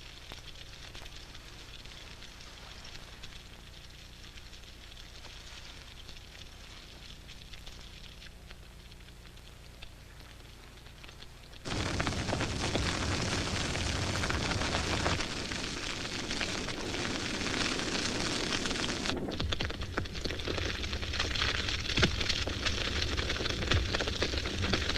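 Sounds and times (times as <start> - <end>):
grass fire crackling: 0.0 - 24.9.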